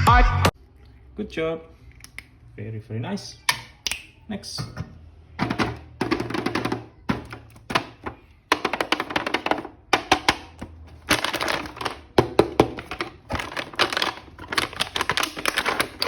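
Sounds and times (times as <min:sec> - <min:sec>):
packaging crackling and clicking: 0:07.1 - 0:16.0.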